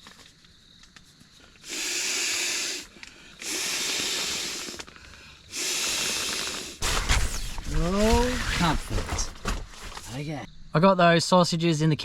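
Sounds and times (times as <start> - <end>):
air hissing through mattress valve: 1.6 - 9.0.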